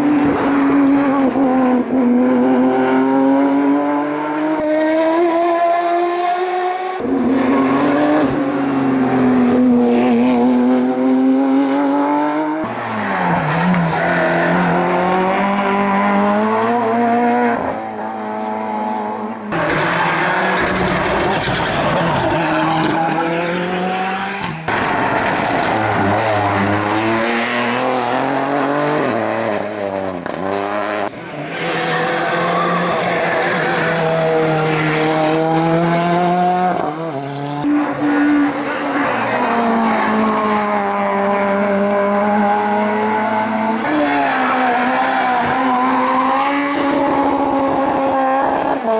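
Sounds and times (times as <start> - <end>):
race car engines revving: 0.0 - 48.9
tyre squeal: 31.4 - 34.9.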